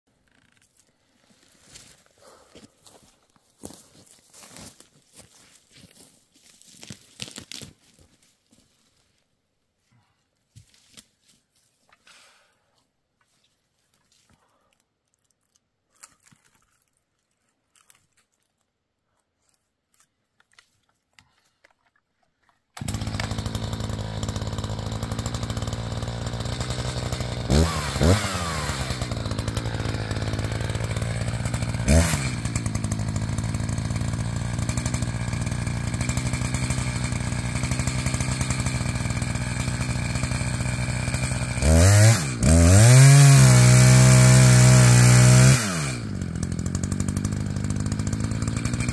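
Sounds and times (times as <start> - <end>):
chainsaw idling and revving: 22.8 - 48.9.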